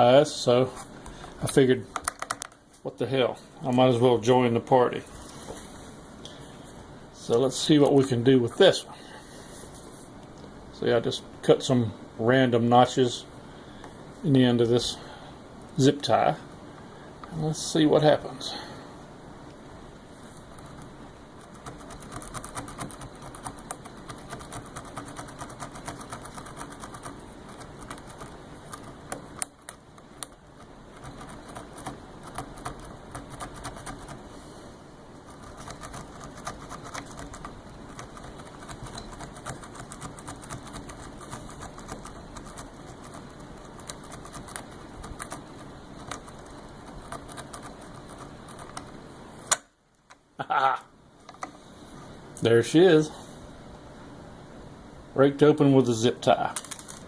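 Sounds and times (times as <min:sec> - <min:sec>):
small clicks and scratching: 0:20.4 - 0:34.2, 0:35.2 - 0:49.0.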